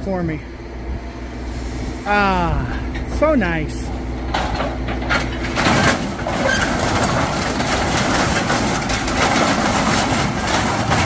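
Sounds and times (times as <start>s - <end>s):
machine engine running: 0.0s - 11.0s
scrap metal clanking and scraping: 3.9s - 11.0s.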